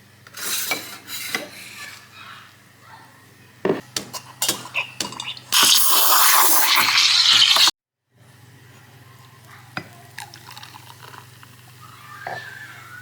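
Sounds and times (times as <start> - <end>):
dishes and utensils clinking: 4.0 - 5.8.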